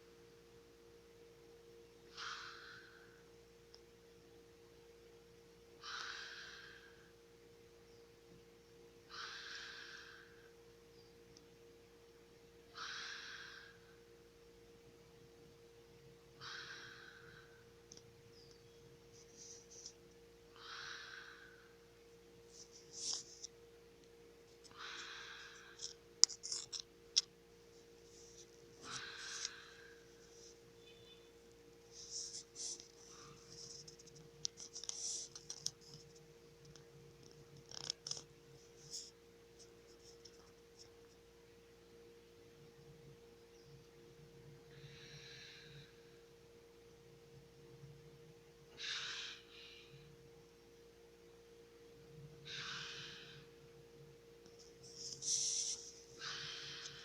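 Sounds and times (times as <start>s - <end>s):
faint steady hum: 0.0s - 57.0s
man snoring softly: 2.1s - 3.3s, 5.8s - 7.2s, 9.1s - 10.6s, 12.7s - 14.1s, 16.4s - 17.7s, 20.5s - 21.8s, 28.2s - 31.2s, 52.4s - 53.6s, 54.9s - 57.0s.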